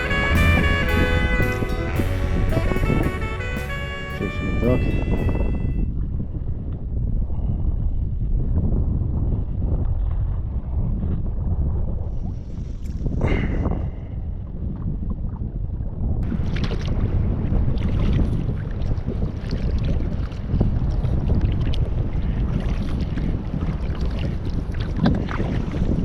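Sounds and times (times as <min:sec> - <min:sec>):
wind buffeting microphone: 0:04.2 - 0:26.0
small water splashes: 0:16.2 - 0:26.0.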